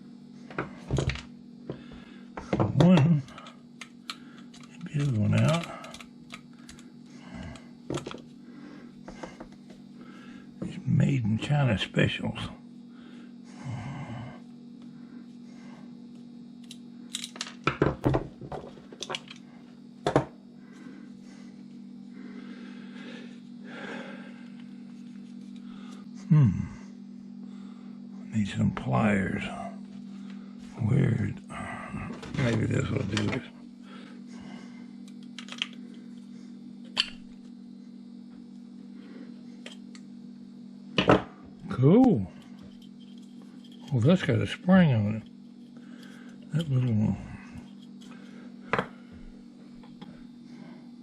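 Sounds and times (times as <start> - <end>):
steady low hum: 0.0 - 51.0
pliers and plastic parts clicking: 4.1 - 6.8.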